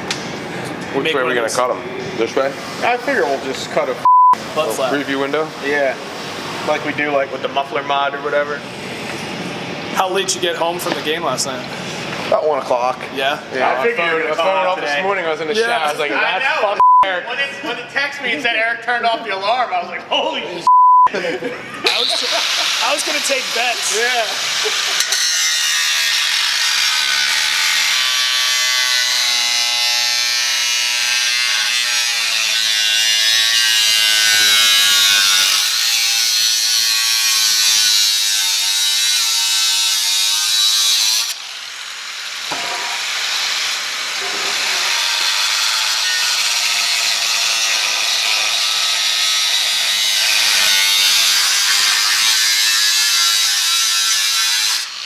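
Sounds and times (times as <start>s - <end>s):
angle grinder cutting metal: 21.8s - 55.0s.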